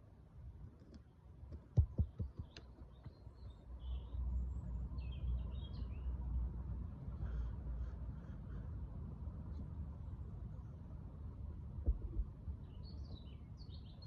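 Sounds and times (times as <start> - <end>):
steady low rumble: 6.5 - 13.0
soft low thumps: 11.7 - 12.6.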